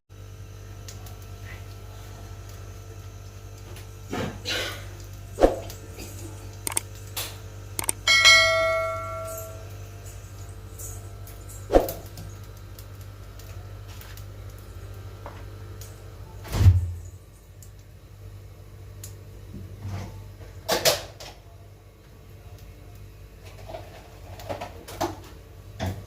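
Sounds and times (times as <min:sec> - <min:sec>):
low steady hum: 0:01.9 - 0:15.2.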